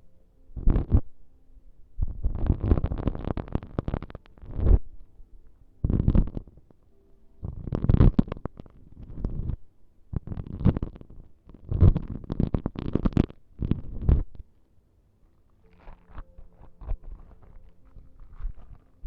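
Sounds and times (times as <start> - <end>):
crackly scratching on microphone: 0.6 - 1.1, 2.0 - 4.9, 5.8 - 6.6, 7.4 - 14.4, 15.6 - 19.0.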